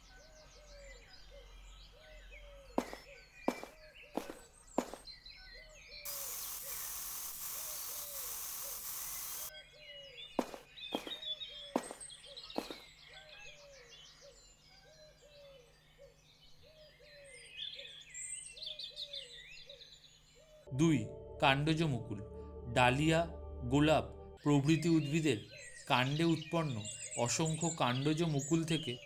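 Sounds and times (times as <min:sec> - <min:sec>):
bird chirps: 0:00.0 - 0:20.7, 0:24.4 - 0:29.0
steady hiss: 0:06.1 - 0:09.5.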